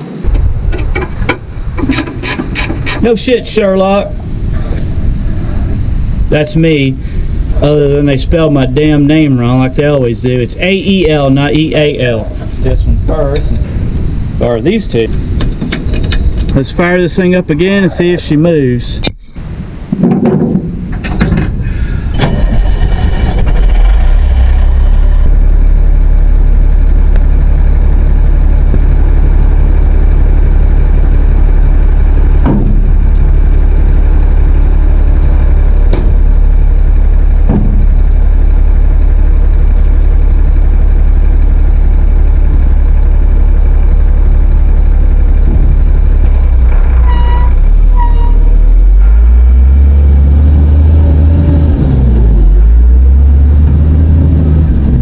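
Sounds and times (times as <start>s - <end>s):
diesel truck engine running: 0.0s - 55.0s
sharp knocks: 20.0s - 21.5s, 32.4s - 32.9s, 35.9s - 36.2s, 37.4s - 37.9s.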